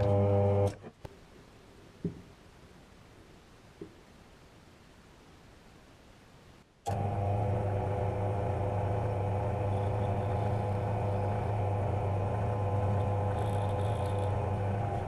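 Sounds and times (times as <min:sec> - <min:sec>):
power tool motor humming: 0:00.0 - 0:00.8, 0:06.9 - 0:15.0.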